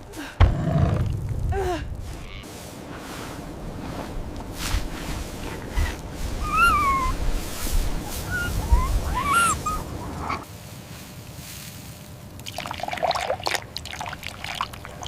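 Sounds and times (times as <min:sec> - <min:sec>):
low steady rumble: 0:00.0 - 0:15.0
dog whimpering: 0:06.4 - 0:07.2, 0:08.1 - 0:10.4.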